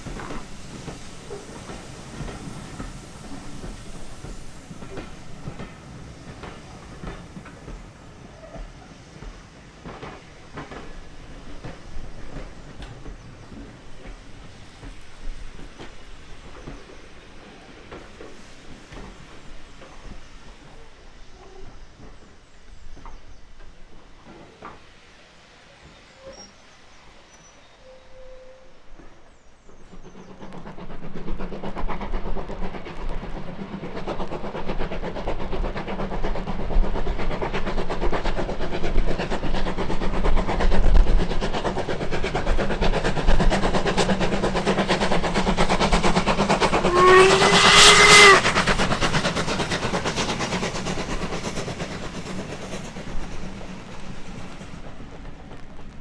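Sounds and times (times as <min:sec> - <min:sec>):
steam locomotive exhaust beats: 0:00.0 - 0:56.0
steam whistle blast: 0:27.8 - 0:28.9, 0:46.4 - 0:49.1.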